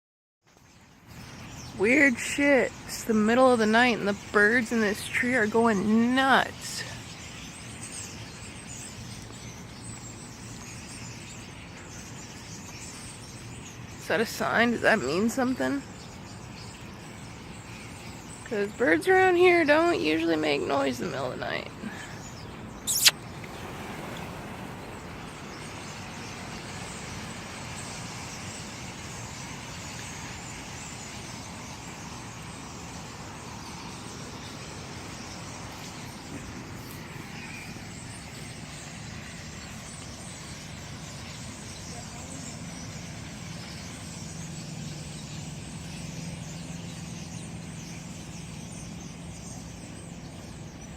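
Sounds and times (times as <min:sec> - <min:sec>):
faint bird chirping: 0:00.4 - 0:50.9
distant road traffic: 0:00.5 - 0:50.9
sharp click: 0:22.9 - 0:23.2.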